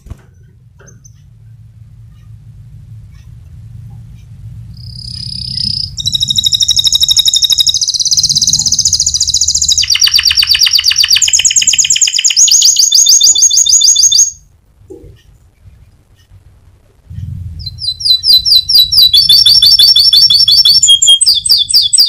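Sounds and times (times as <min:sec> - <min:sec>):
canary singing fast trills: 0:04.0 - 0:14.5, 0:17.1 - 0:22.0.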